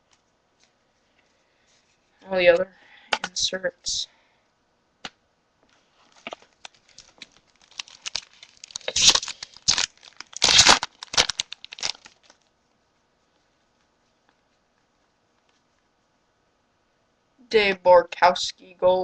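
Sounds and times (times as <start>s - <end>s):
foil wrapper crinkling: 6.0s - 12.5s
foil ripping: 6.1s - 12.4s.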